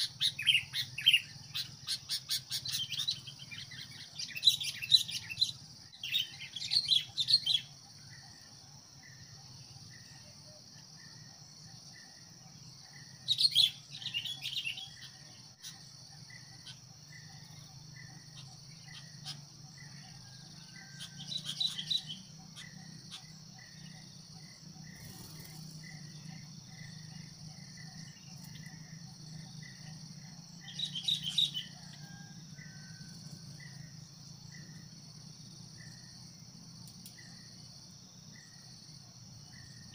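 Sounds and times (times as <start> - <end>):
bulbul calling: 0.0 - 7.8, 20.9 - 24.0, 30.6 - 31.9
cricket chirping: 0.0 - 39.9
high insect drone: 0.0 - 39.9.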